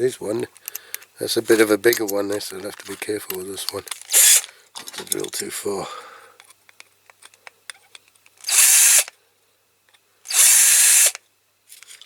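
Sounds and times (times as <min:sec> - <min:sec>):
electric drill bursts: 0:04.1 - 0:04.5, 0:08.4 - 0:09.1, 0:10.3 - 0:11.2.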